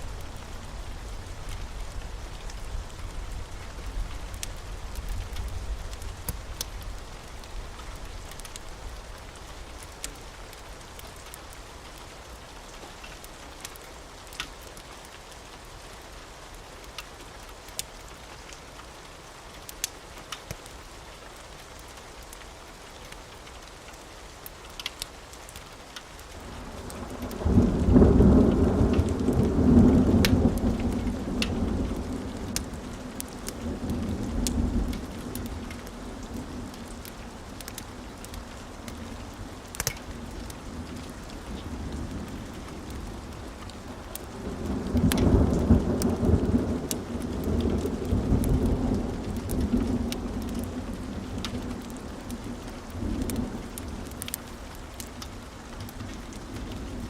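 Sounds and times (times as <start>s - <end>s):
steady rain falling: 0.0s - 57.0s
thunder rumbling: 26.7s - 54.7s.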